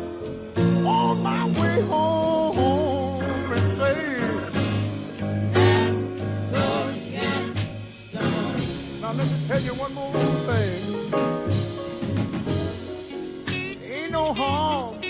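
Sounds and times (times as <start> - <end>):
soul blues song with band: 0.0 - 15.0
people singing: 0.9 - 10.2.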